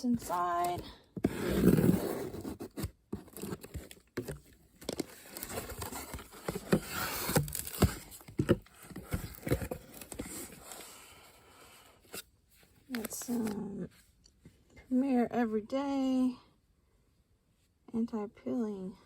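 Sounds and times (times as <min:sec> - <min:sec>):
packaging tearing and rustling: 0:01.3 - 0:10.8.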